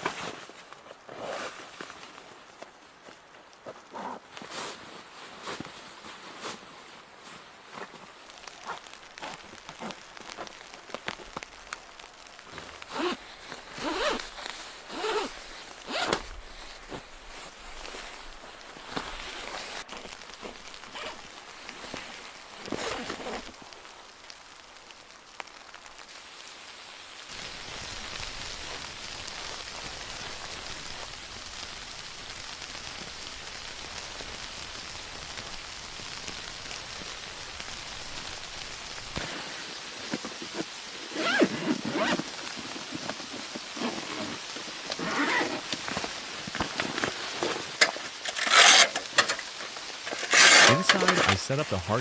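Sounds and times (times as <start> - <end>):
rustling and handling noise: 0.0 - 26.1, 38.7 - 52.0
blizzard wind and driven snow: 0.0 - 52.0.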